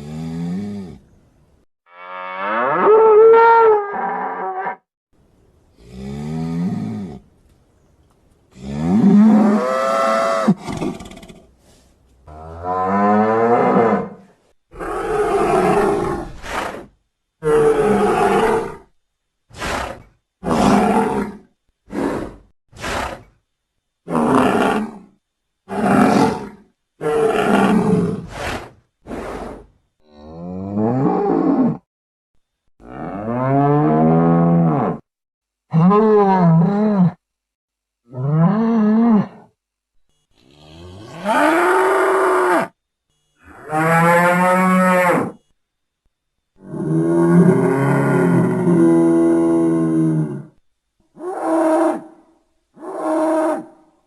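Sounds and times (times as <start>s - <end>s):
deep cattle-like bellows and roars: 0.0s - 1.0s, 1.9s - 4.8s, 5.7s - 7.3s, 8.5s - 10.6s, 12.3s - 18.9s, 24.1s - 25.1s, 25.7s - 31.9s, 32.8s - 35.1s, 35.7s - 37.2s, 38.1s - 39.6s, 40.4s - 42.8s, 43.4s - 45.4s, 46.6s - 52.2s.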